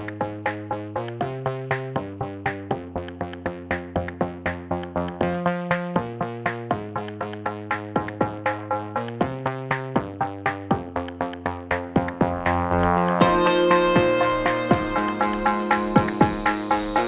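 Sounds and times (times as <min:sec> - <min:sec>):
drum-machine beat: 0:00.0 - 0:17.0
synthesizer chords: 0:04.7 - 0:17.0.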